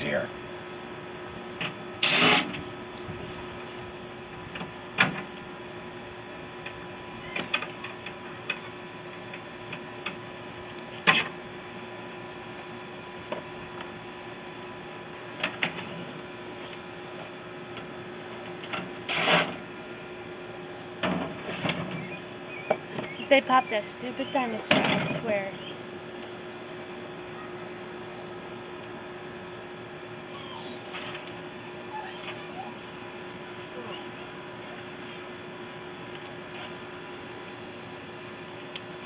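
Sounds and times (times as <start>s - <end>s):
steady low hum: 0.0s - 7.3s, 8.0s - 39.0s
hand tools clanking on metal: 24.6s - 25.4s.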